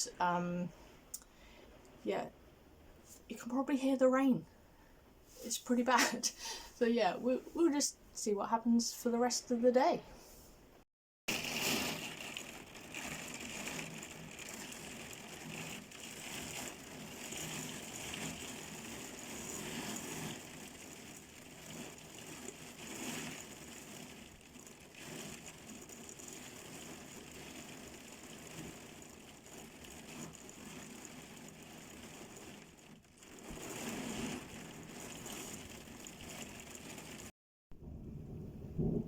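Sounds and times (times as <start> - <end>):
heavy rain falling: 11.3 - 37.3.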